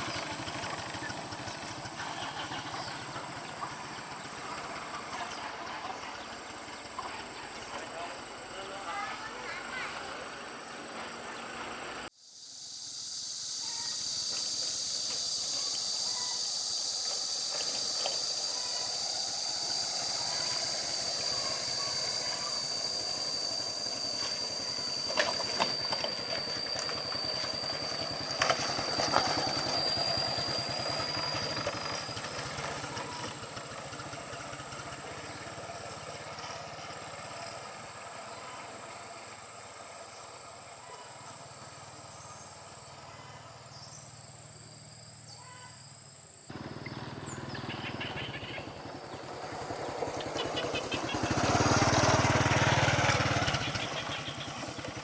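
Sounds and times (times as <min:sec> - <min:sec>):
insects droning: 0:00.0 - 0:55.0
hiss: 0:09.2 - 0:43.0.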